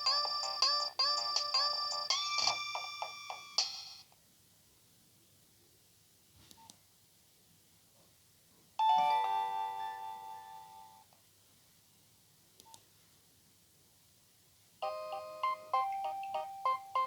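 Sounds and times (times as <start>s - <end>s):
ringtone melody: 0.0s - 4.0s, 8.8s - 11.0s, 14.8s - 17.0s
steady beeping ringtone: 0.0s - 4.0s, 14.8s - 17.0s
faint click: 12.6s - 12.8s.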